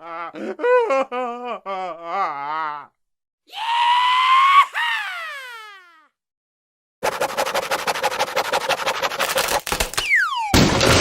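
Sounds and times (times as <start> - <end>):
cartoon wailing scream: 3.5 - 6.1.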